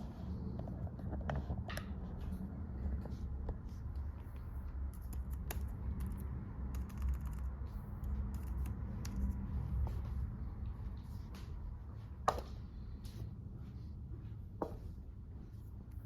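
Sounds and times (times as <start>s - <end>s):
low steady hum: 0.0s - 16.0s
laptop clicks and taps: 4.9s - 9.3s.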